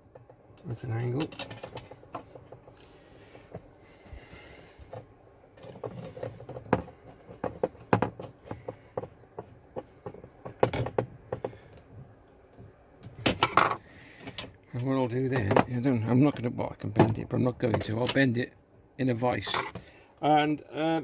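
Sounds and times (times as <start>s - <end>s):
metal parts clicking and clinking: 0.6s - 2.2s.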